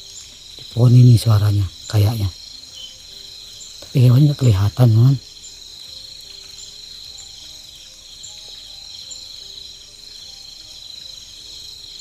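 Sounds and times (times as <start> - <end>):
crickets chirring: 0.0 - 12.0
faint ticks: 5.4 - 12.0.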